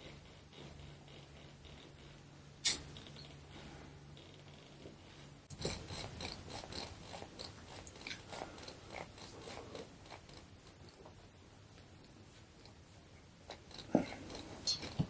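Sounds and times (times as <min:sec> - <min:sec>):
soft crackling and rubbing: 0:00.0 - 0:15.0.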